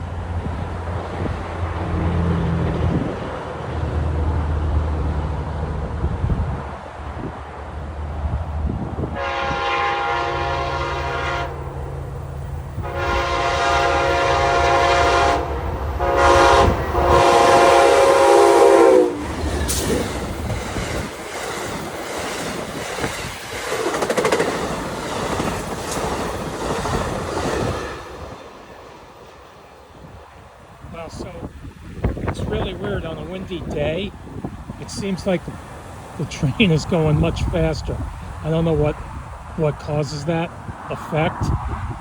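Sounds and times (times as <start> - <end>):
wind noise: 0.0 - 10.0, 14.0 - 28.6, 29.9 - 42.0
locomotive engine rumble: 0.0 - 42.0
train air horn blasts: 9.1 - 11.6, 12.8 - 20.0
train wheels clattering on rails: 19.2 - 29.5.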